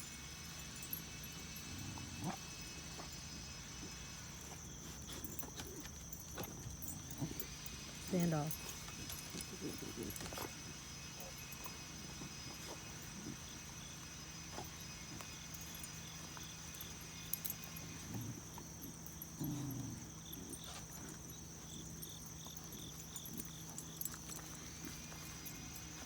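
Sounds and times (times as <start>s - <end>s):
insects chirping: 0.0s - 26.0s.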